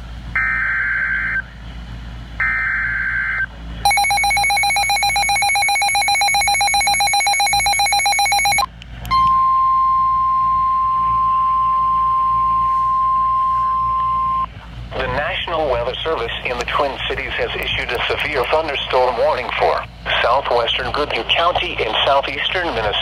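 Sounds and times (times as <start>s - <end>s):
steady single-pitch alarm tone: 0.4s - 1.5s, 2.4s - 14.5s.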